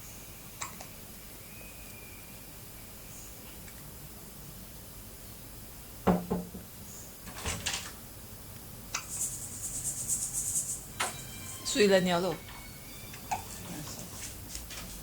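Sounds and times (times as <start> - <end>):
fast rhythmic rustle: 9.0 - 10.9.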